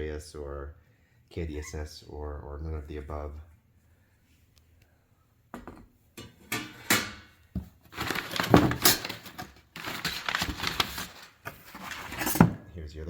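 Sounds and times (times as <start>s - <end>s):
packaging rustling and crinkling: 7.6s - 12.5s.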